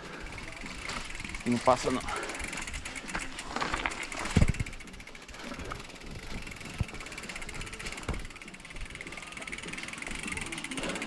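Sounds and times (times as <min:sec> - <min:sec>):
bike tyre and drivetrain noise: 0:00.0 - 0:11.0
bike thumping over bumps: 0:02.1 - 0:04.8, 0:05.6 - 0:08.6
wind on microphone: 0:04.2 - 0:04.8.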